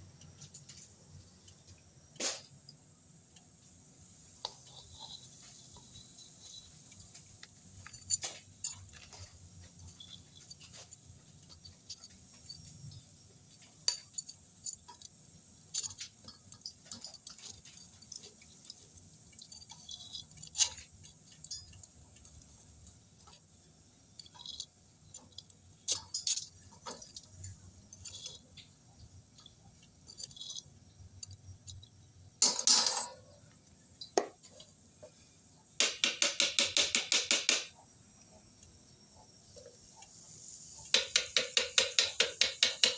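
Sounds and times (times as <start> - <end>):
kitchenware clinking: 32.4 - 35.1, 40.8 - 42.9.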